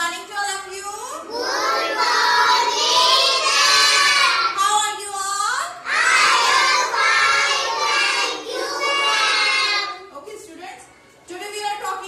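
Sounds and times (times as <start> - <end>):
children chanting in unison: 1.2 - 4.6, 5.8 - 9.9.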